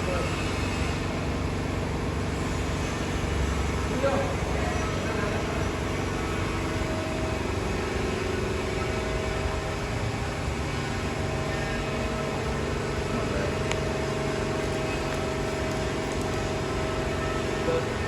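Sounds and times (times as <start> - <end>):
car engine humming: 5.4 - 18.0.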